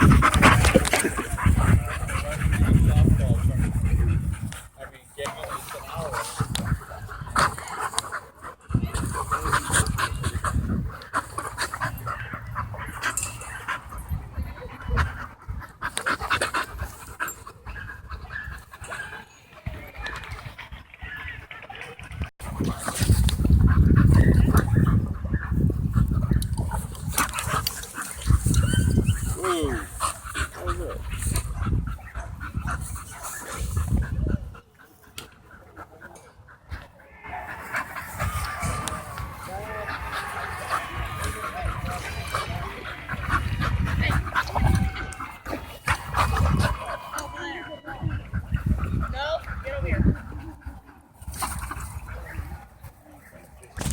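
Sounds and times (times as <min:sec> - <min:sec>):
dogs panting: 0:00.0 - 0:53.9.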